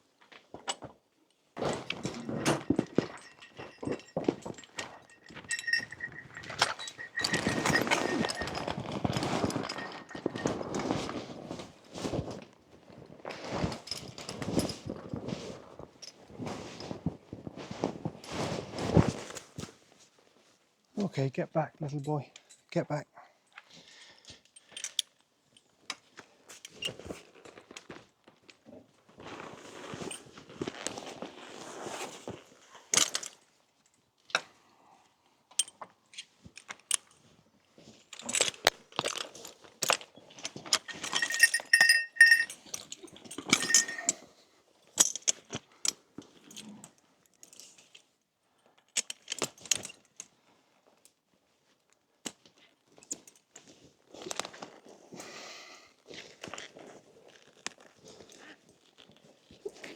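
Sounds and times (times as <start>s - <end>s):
harness chains clinking: 1.6s - 11.2s, 40.7s - 44.2s
rustling: 1.6s - 13.8s, 40.4s - 44.3s.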